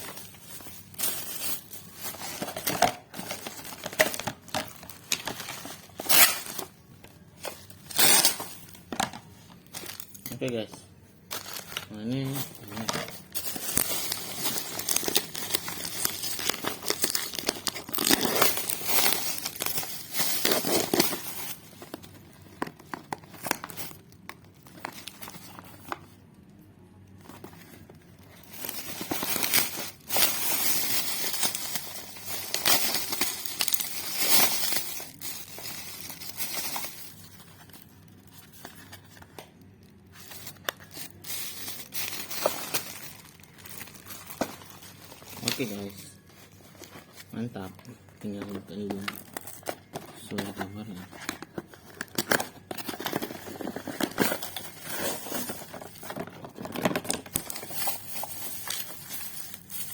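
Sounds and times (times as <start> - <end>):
packaging crinkling and rustling: 0.0 - 59.9.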